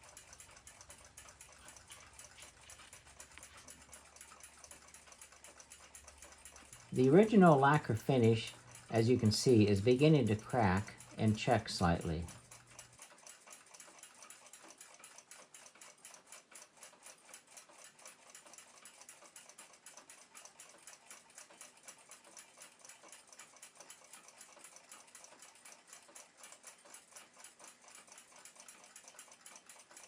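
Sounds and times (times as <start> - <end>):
fast clock ticking: 0.0 - 30.0.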